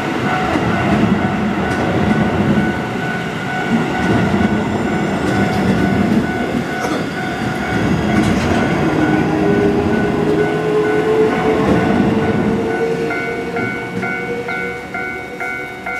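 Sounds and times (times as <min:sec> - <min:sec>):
crossing alarm bell tones: 0:00.0 - 0:15.9
train motor whine: 0:00.0 - 0:15.9
train wheels rumbling on rail: 0:00.0 - 0:15.9.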